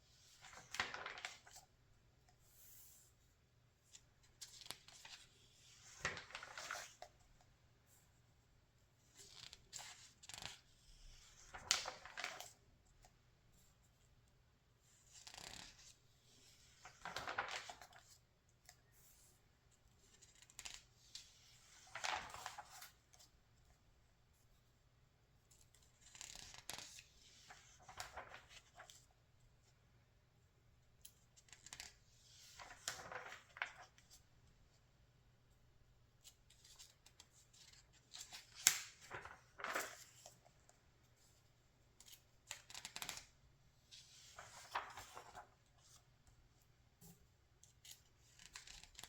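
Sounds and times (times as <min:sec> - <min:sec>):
magazine pages turning: 0:00.4 - 0:01.6, 0:04.4 - 0:07.1, 0:11.4 - 0:12.6, 0:16.8 - 0:18.2, 0:21.8 - 0:23.2, 0:26.1 - 0:29.0, 0:31.6 - 0:34.2, 0:37.5 - 0:40.5, 0:44.0 - 0:46.0.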